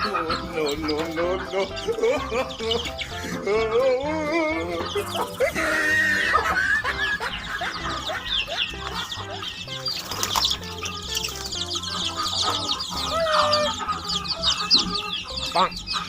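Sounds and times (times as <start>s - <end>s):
background music: 0.0s - 16.0s
chickens clucking: 0.0s - 16.0s
rapid high chirps: 4.8s - 16.0s.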